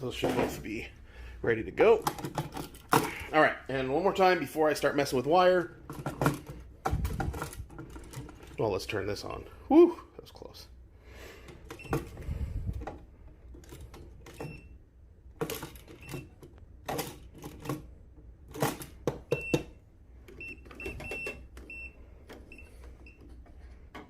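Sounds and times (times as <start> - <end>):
handling knocks and clicks: 1.8 - 3.3, 5.1 - 8.9, 15.3 - 24.0.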